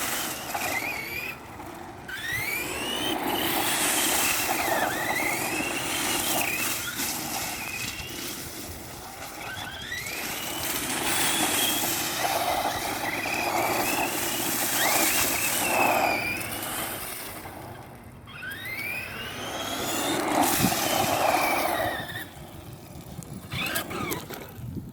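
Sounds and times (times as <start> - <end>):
toy car electric motor whining: 0.0 - 24.7.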